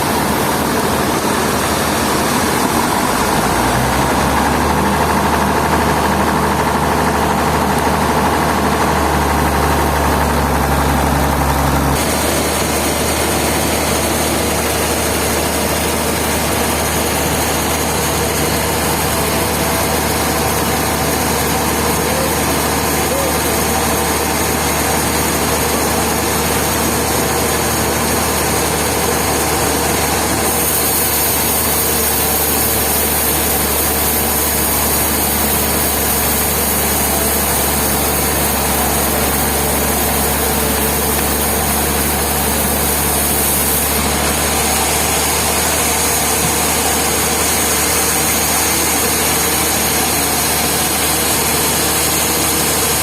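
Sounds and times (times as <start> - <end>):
sawmill machinery humming: 0.0 - 53.0.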